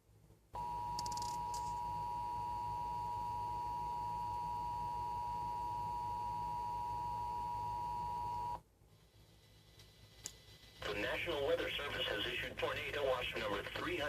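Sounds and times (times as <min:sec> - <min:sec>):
steady alarm tone: 0:00.6 - 0:08.6.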